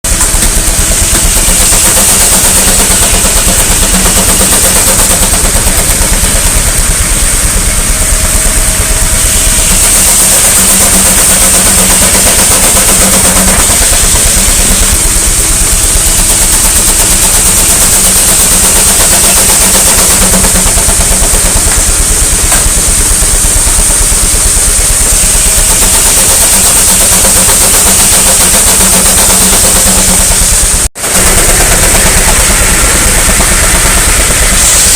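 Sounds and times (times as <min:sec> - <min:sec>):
steam engine exhaust beats: 0:00.0 - 0:34.9
steam hissing: 0:00.1 - 0:34.9.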